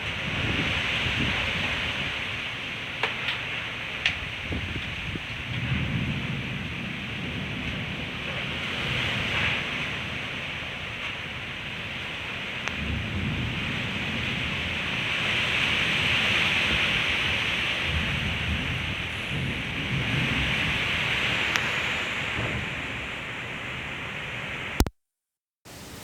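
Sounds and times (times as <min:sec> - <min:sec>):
wind buffeting microphone: 0:00.0 - 0:24.8
gusty wind rushing: 0:12.8 - 0:24.8.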